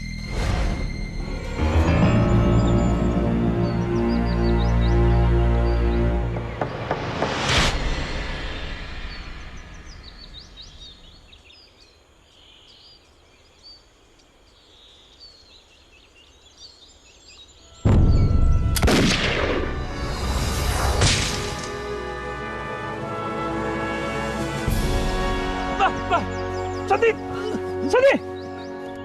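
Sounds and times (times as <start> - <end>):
birds chirping faintly: 1.0 - 18.8, 21.8 - 29.0
loud explosion with deep rumble: 17.9 - 21.6.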